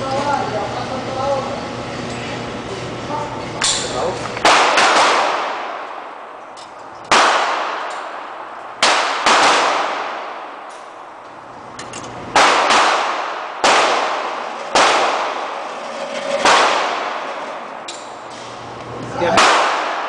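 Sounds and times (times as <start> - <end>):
pistol shots with ringing echo: 4.4 - 6.2, 7.1 - 10.7, 12.3 - 15.6, 19.3 - 20.0.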